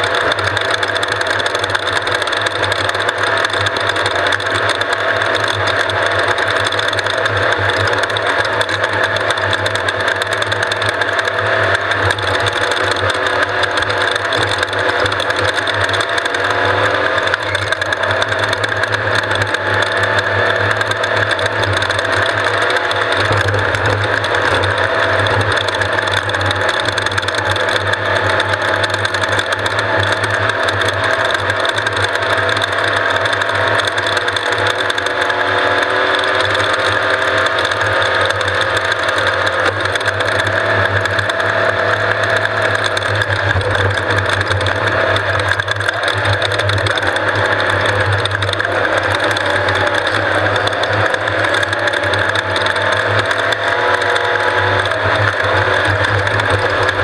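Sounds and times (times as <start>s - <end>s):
mechanical rattle: 0.0s - 57.0s
vehicle engine running: 0.0s - 57.0s.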